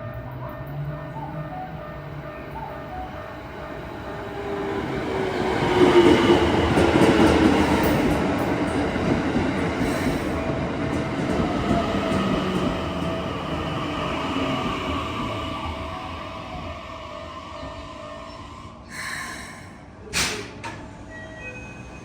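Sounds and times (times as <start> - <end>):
electric train passing: 0.0 - 20.0.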